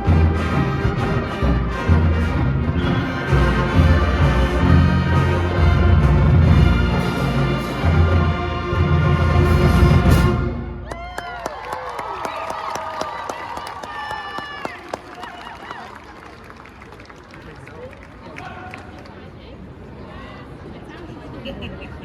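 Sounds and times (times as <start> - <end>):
marching band playing: 0.0 - 10.9.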